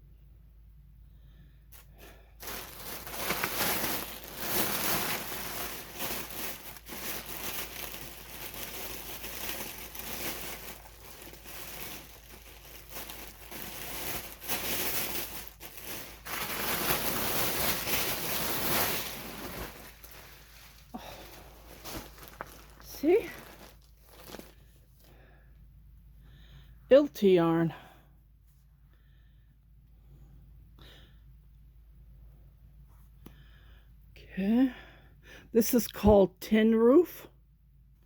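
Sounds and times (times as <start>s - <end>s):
plastic packaging crinkling: 1.8s - 25.1s.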